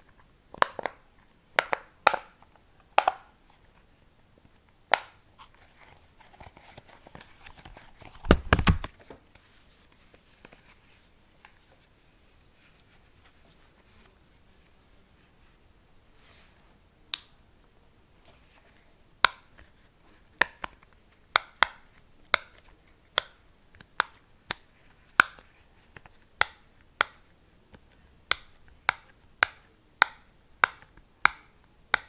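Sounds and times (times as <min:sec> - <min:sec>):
crinkling and rustling: 0:05.4 - 0:15.6.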